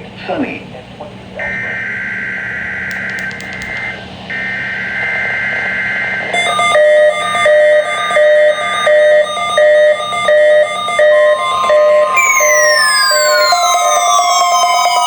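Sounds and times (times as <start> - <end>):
buzzy digital data tones: 1.4 - 15.0
two-pitch alert tone: 6.4 - 15.0.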